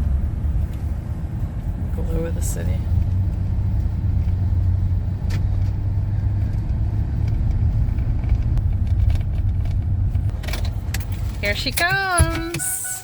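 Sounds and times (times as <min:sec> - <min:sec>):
road and engine rumble in car: 0:00.0 - 0:13.0.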